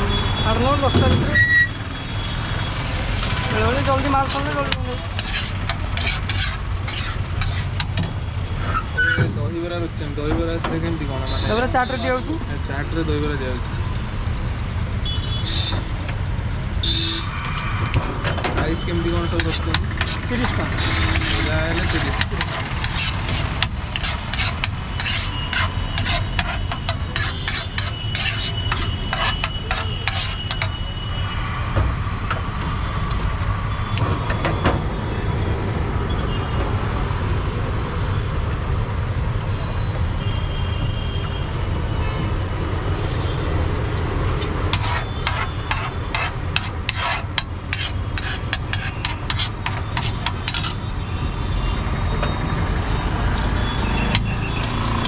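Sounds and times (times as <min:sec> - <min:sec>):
low rumble of traffic: 0:00.0 - 0:55.0
utensils clattering and tapping: 0:03.5 - 0:08.2, 0:17.6 - 0:30.8, 0:44.0 - 0:50.9, 0:53.9 - 0:55.0.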